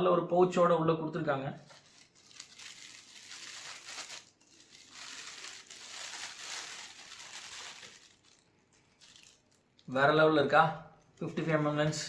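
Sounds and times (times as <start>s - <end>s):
packaging rustling and crinkling: 1.6s - 10.0s.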